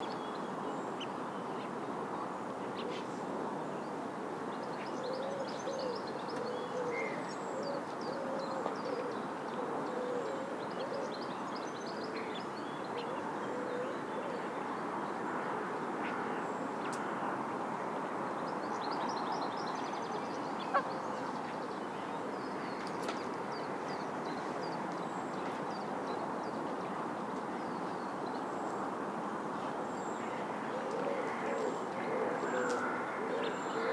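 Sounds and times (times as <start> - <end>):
low cooing bird calls: 5.0 - 11.2, 13.0 - 14.6, 30.7 - 33.9.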